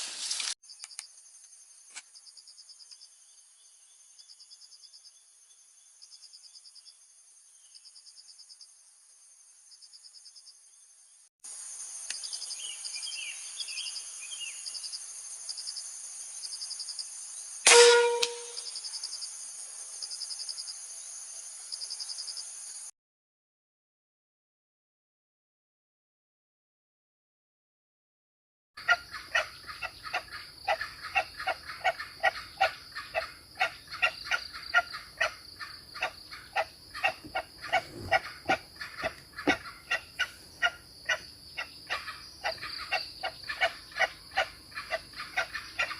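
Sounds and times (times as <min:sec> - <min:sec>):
insects chirping: 0:00.0 - 0:22.9, 0:28.8 - 0:45.9
air rifle shot: 0:17.7 - 0:18.4.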